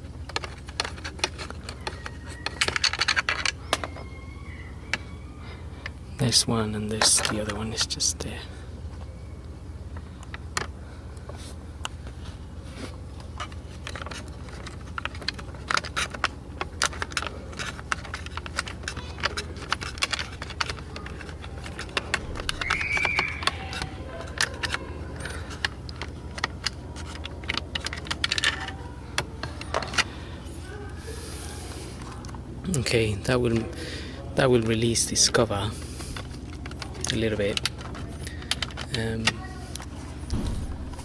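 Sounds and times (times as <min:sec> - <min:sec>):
screwdriver clicking and rattling: 0:00.2 - 0:04.0, 0:13.4 - 0:30.1, 0:36.2 - 0:39.9.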